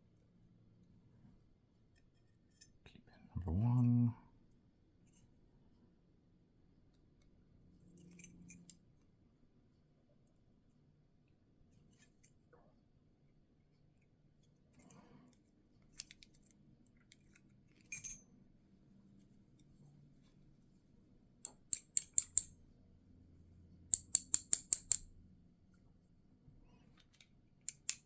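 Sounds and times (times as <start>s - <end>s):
small metal parts clicking: 21.4s - 22.5s, 23.9s - 25.1s, 27.7s - 28.0s.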